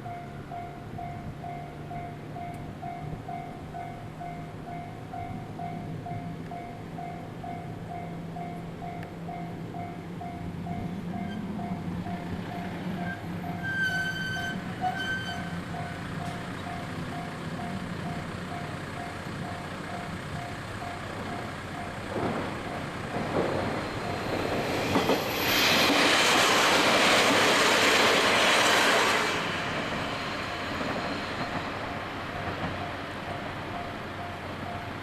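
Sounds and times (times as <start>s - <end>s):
level-crossing warning bell: 0.0s - 26.7s, 29.7s - 35.0s
passing train rush: 0.0s - 35.0s
train wheel clacks: 10.7s - 35.0s.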